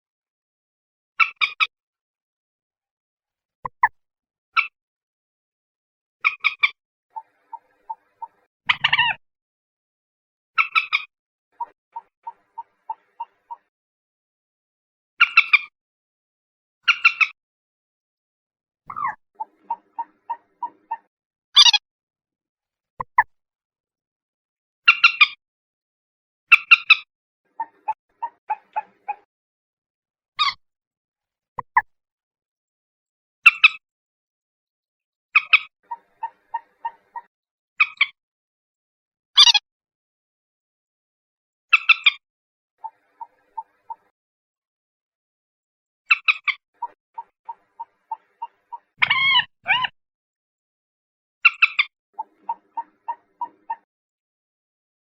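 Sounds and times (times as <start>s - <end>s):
moorhen clucking notes: 3.7s - 3.9s, 6.2s - 9.2s, 10.6s - 13.7s, 18.9s - 21.8s, 26.5s - 29.3s, 31.6s - 31.8s, 35.4s - 38.1s, 42.8s - 44.1s, 46.1s - 49.9s, 51.5s - 53.9s
soft low clucks: 18.9s - 21.1s, 23.0s - 23.3s, 31.6s - 31.9s
moorhen calling: 18.9s - 21.7s, 35.4s - 37.3s, 51.6s - 53.8s.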